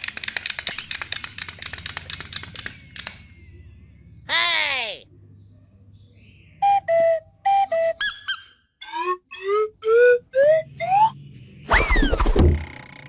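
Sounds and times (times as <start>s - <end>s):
two-note whistle calls: 6.6s - 12.0s
whistle chirps: 6.6s - 12.3s
upward-sliding whistles: 6.6s - 12.6s.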